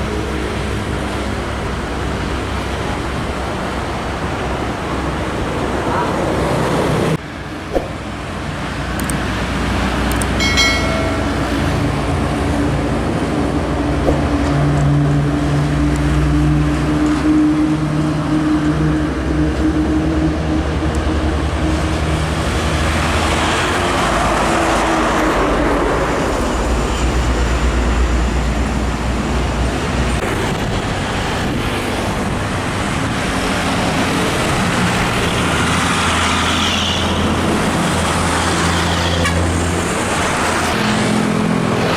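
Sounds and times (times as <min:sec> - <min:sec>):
truck diesel engines droning: 0:00.0 - 0:41.9
short high-pitched tone: 0:10.4 - 0:11.9.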